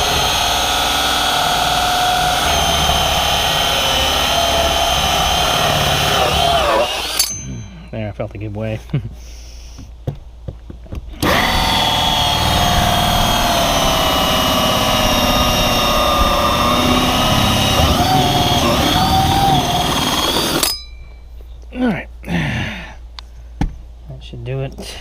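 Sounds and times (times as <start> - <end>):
power drill cutting through fibreglass: 0.0 - 7.4, 11.2 - 20.7.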